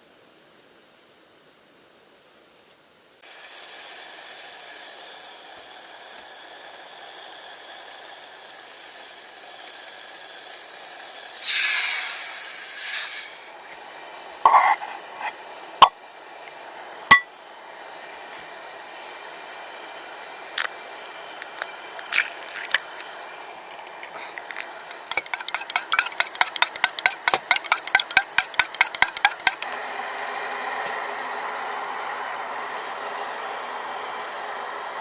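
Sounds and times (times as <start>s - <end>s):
camp stove hissing: 17.8s - 26.1s.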